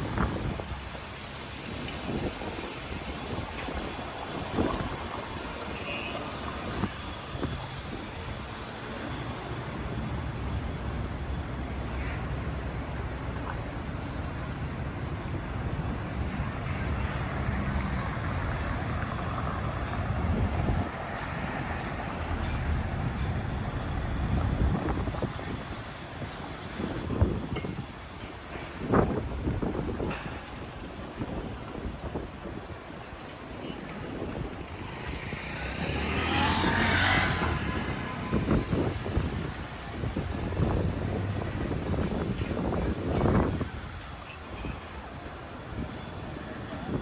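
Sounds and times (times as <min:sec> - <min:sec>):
road traffic rumble: 0:00.0 - 0:47.0
vehicle passing: 0:34.6 - 0:42.7.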